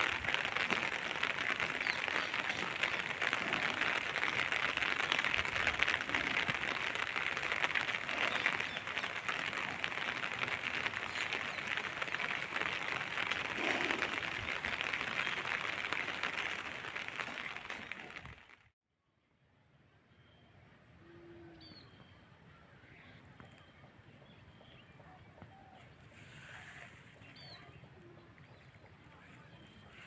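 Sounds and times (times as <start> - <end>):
steady rain falling: 0.0 - 18.6.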